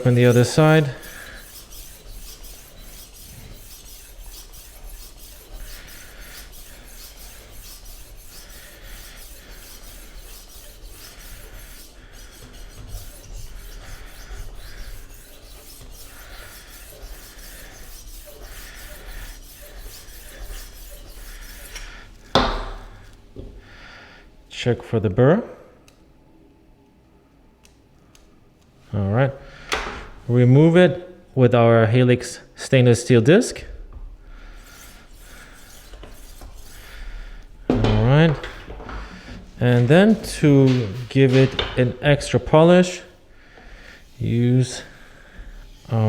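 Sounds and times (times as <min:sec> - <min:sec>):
knife sharpener grinding: 0:00.0 - 0:21.9.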